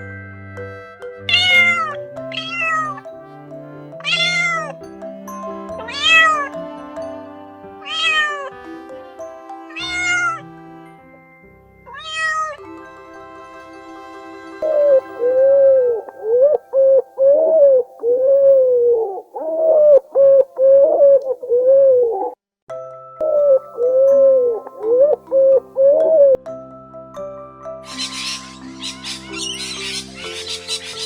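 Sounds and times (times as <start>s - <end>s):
background music: 0.0s - 18.8s, 22.7s - 31.0s
cat meowing: 1.3s - 3.0s, 4.0s - 4.8s, 5.8s - 6.5s, 7.8s - 8.5s, 9.7s - 10.4s, 11.9s - 12.6s.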